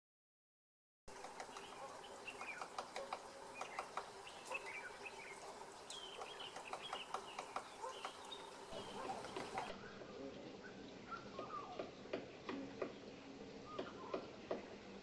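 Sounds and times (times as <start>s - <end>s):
woodpecker tapping on branch: 1.1s - 9.7s
birds chirping: 1.1s - 14.6s.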